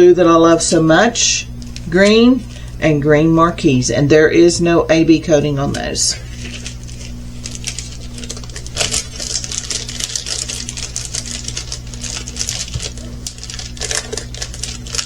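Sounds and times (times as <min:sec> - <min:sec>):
steady low hum: 0:00.0 - 0:15.0
resin drills rattling in plastic bags: 0:05.7 - 0:15.0.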